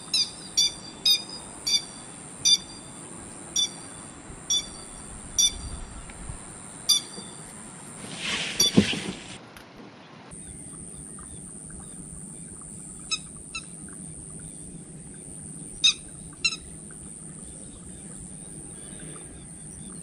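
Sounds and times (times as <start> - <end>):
lapwing calls: 0.0 - 7.9, 10.4 - 20.0
steady high hiss: 0.0 - 9.6, 10.2 - 20.0
low hum: 10.2 - 20.0.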